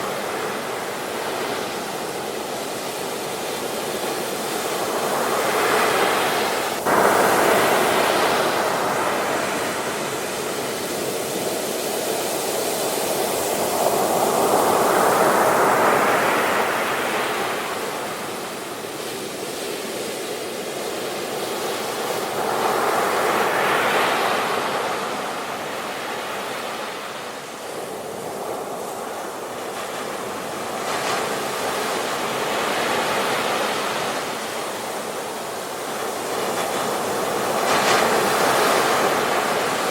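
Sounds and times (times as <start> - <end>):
sea waves breaking on shore: 0.0 - 39.9.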